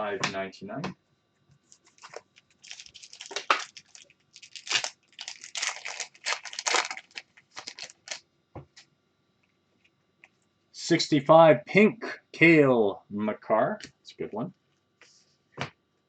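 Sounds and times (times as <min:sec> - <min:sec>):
plastic packaging crinkling: 0:01.6 - 0:08.2.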